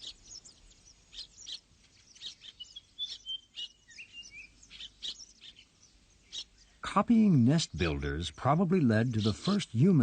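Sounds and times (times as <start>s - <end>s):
thin whistled bird notes: 0.0s - 6.8s
birds chirping: 0.0s - 10.0s.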